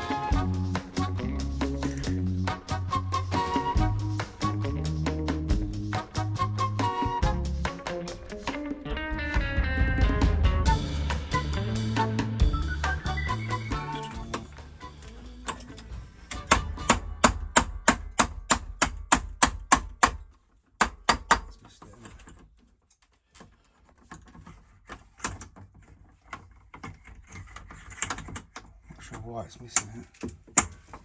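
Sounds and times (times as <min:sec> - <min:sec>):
low background music: 0:00.0 - 0:17.3.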